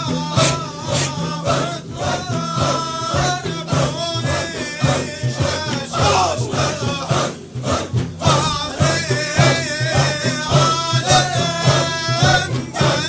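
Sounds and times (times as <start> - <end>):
chorus chanting: 0.0 - 13.0
steady beat: 0.0 - 13.0.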